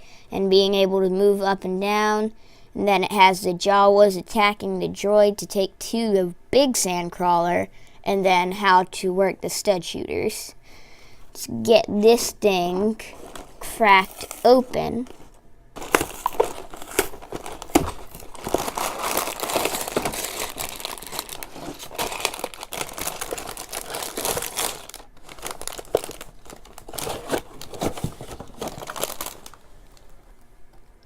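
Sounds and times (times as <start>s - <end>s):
plastic bags crinkling: 12.9s - 30.2s
cardboard box tearing: 15.8s - 29.4s.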